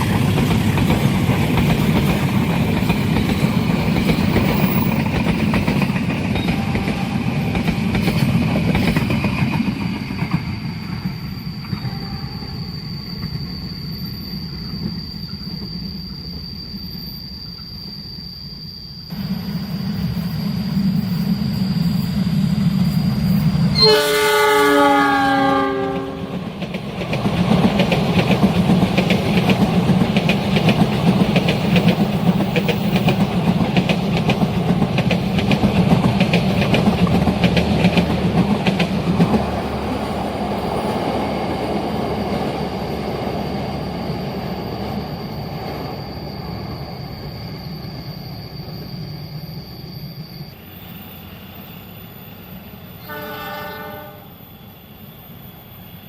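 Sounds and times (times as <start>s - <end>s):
train wheels clattering: 0.0s - 12.0s, 25.3s - 45.0s
high-pitched whine: 0.0s - 24.0s, 27.7s - 56.0s
train horn blast: 6.4s - 7.7s, 23.7s - 26.4s, 53.0s - 54.4s.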